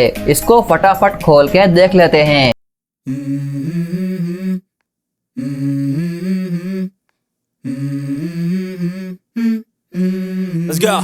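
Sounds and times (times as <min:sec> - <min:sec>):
hummed vocal melody: 0:03.0 - 0:04.8, 0:05.4 - 0:11.0.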